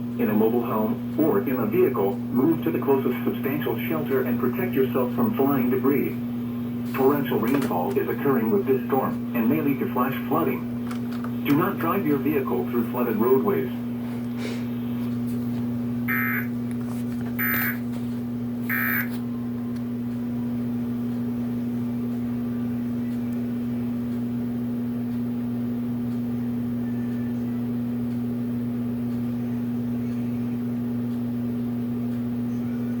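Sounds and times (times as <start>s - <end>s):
low electrical hum: 0.0s - 33.0s
warbling digital data tones: 16.1s - 16.5s, 17.4s - 17.8s, 18.7s - 19.1s.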